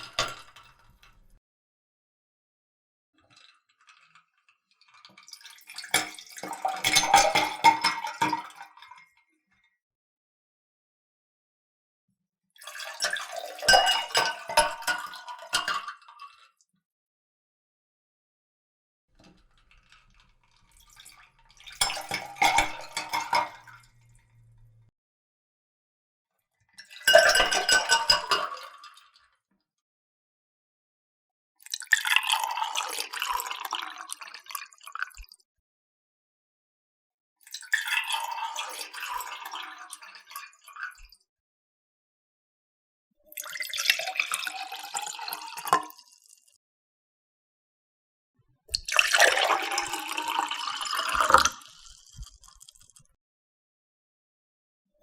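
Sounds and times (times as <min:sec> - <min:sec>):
water pouring into a cup: 0:05.0 - 0:08.9, 0:12.6 - 0:16.4, 0:19.3 - 0:24.9, 0:26.9 - 0:29.0, 0:31.6 - 0:35.3, 0:37.4 - 0:41.1, 0:43.3 - 0:46.6, 0:48.7 - 0:53.2.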